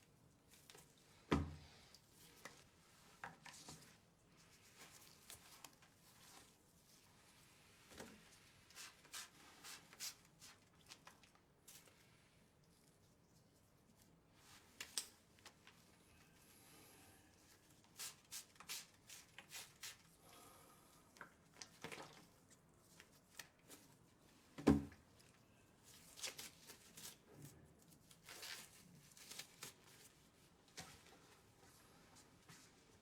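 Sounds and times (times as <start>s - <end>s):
light clicks of objects handled: 14.0s - 16.0s.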